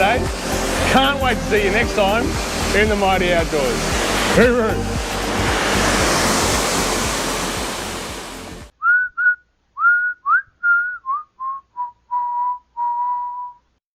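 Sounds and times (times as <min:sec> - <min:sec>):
waterfall rushing: 0:00.0 - 0:08.7
person whistling tune: 0:08.8 - 0:13.7.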